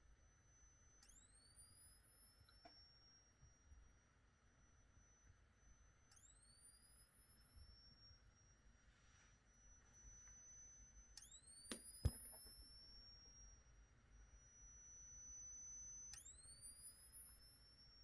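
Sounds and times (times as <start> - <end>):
strobe charging whine: 0.0 - 18.0.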